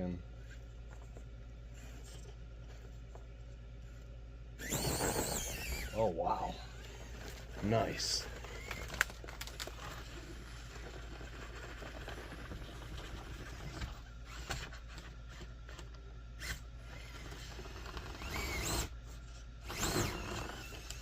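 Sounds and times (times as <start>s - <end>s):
steady low hum: 0.0s - 21.0s
electric motor whining: 4.6s - 19.0s, 19.6s - 21.0s.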